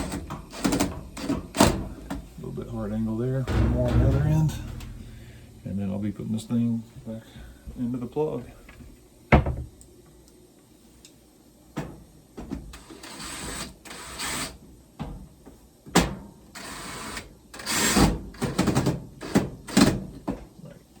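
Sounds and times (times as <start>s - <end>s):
clicks and knocks of metal panel: 3.5s - 5.8s.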